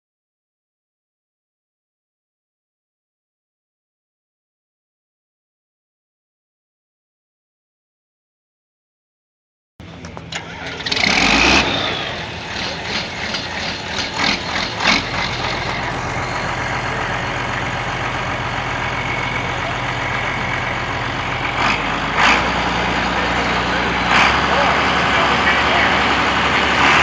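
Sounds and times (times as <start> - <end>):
diesel tractor engine running: 9.8 - 27.0.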